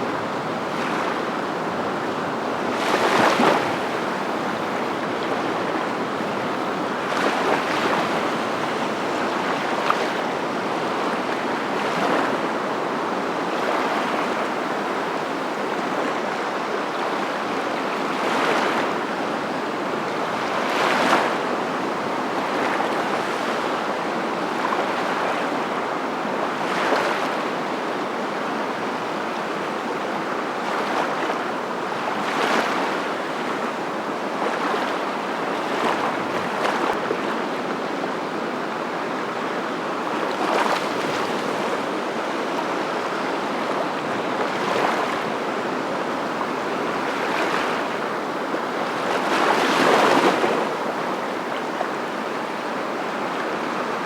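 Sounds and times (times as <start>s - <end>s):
waves washing in: 0.0s - 23.8s, 39.7s - 54.0s.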